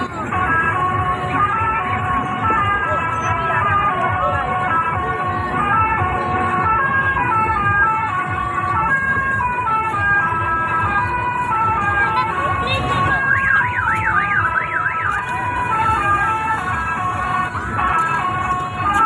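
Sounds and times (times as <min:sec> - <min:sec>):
musical horn playing a tune: 0:00.0 - 0:19.0
warbling siren tone: 0:11.6 - 0:17.8.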